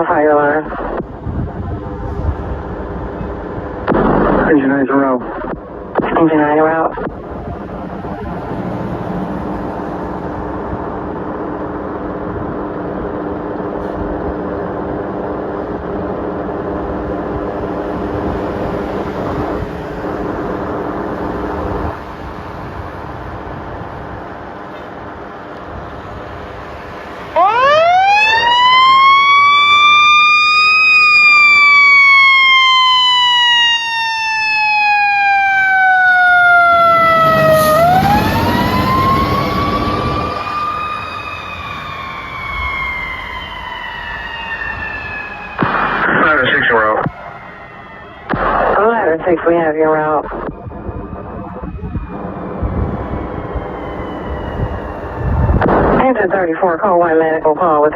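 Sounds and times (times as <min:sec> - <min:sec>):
fire truck engine running: 0:00.0 - 0:57.9
siren winding up and down: 0:26.2 - 0:56.3.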